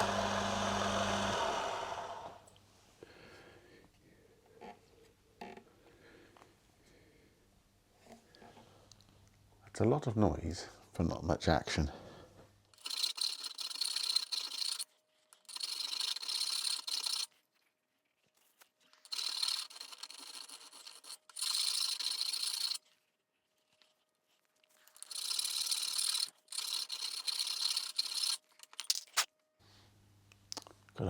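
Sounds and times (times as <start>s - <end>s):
lathe tool rasping into brass: 0.0s - 2.4s
faint lathe hum: 0.0s - 2.5s.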